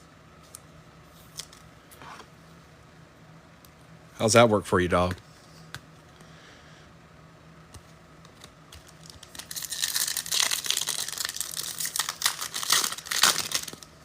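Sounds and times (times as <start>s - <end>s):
wrapper tearing and crinkling: 8.8s - 13.9s.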